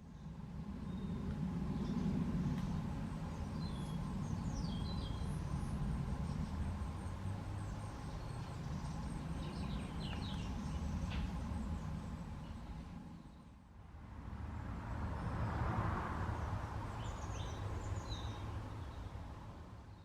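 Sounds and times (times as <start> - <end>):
steady low rumble: 0.0 - 15.4.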